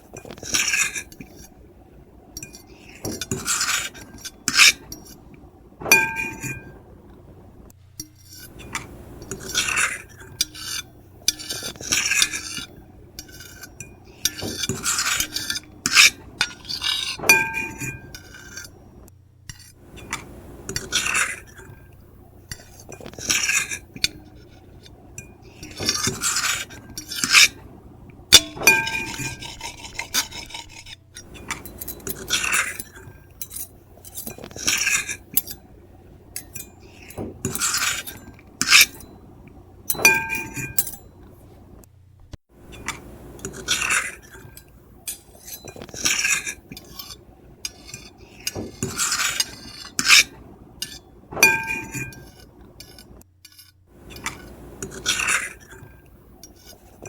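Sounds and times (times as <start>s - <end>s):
fork and knife scraping a plate: 0.0s - 1.6s, 2.3s - 6.8s, 8.0s - 18.9s, 19.5s - 27.8s, 28.4s - 35.7s, 36.3s - 41.6s, 42.7s - 57.0s
cutlery clinks: 5.8s - 6.8s, 13.2s - 18.6s, 28.4s - 30.0s, 39.9s - 41.2s, 48.8s - 52.4s.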